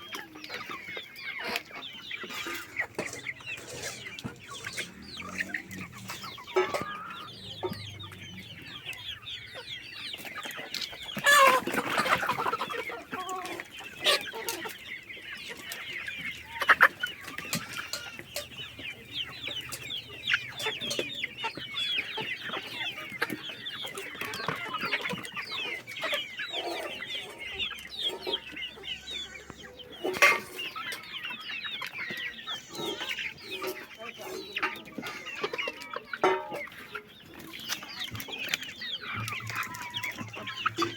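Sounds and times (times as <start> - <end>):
chickens clucking and chirping: 0.0 - 40.9.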